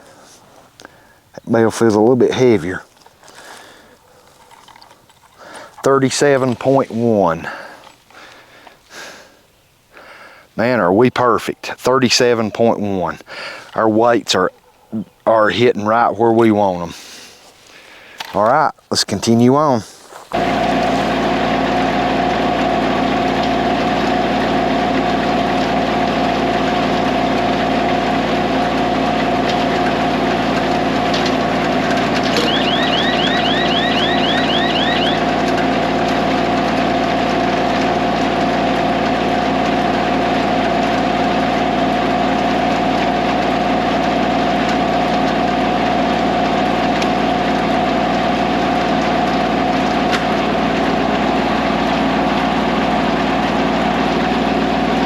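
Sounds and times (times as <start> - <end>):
diesel tractor engine running: 20.3 - 55.0.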